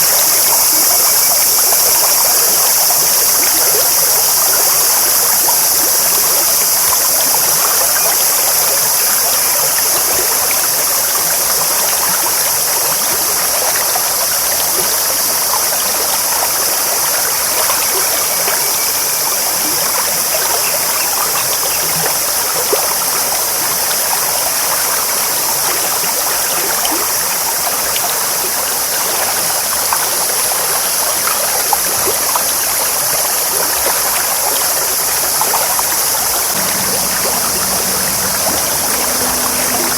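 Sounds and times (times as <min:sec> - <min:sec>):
stream babbling over stones: 0:28.0 - 0:39.9.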